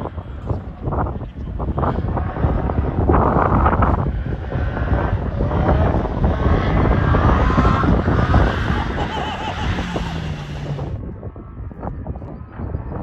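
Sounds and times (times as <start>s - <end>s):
car engine revving: 2.0s - 11.0s
rushing noise: 7.0s - 11.0s.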